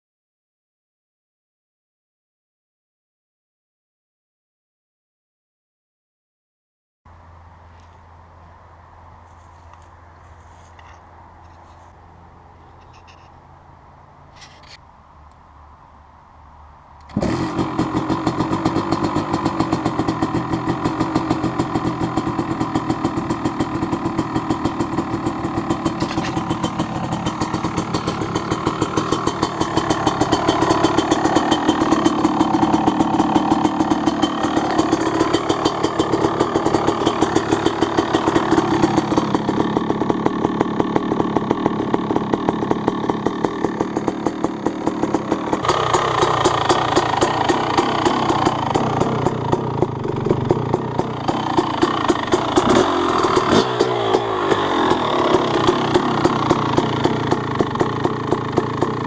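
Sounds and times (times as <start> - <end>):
two-stroke engine idling: 17.0 - 59.0.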